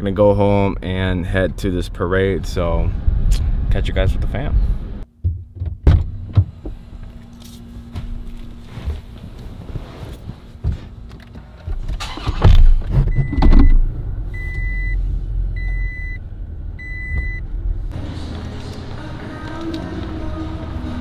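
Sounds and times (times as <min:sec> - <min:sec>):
loud thumps: 0:05.1 - 0:06.8
car warning chime beeping: 0:13.2 - 0:15.0, 0:15.6 - 0:16.2, 0:16.8 - 0:17.4.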